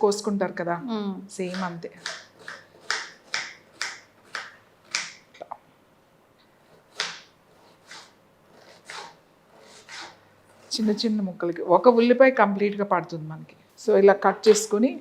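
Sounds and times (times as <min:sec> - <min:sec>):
knife chopping on cutting board: 0:01.4 - 0:05.2, 0:06.8 - 0:08.1.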